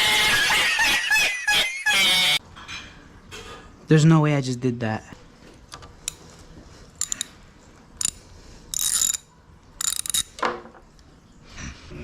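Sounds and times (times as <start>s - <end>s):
ratchet wrench clicking: 7.0s - 7.3s, 8.0s - 10.4s.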